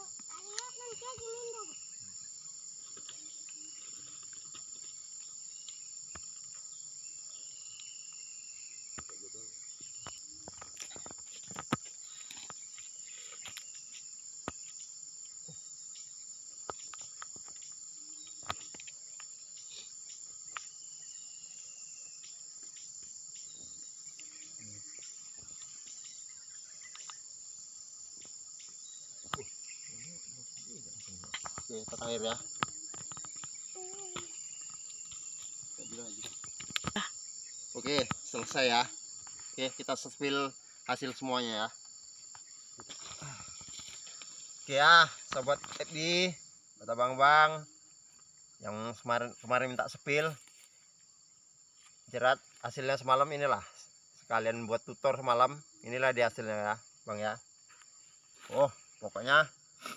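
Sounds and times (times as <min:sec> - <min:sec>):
insects chirping: 0:00.0 - 0:59.9.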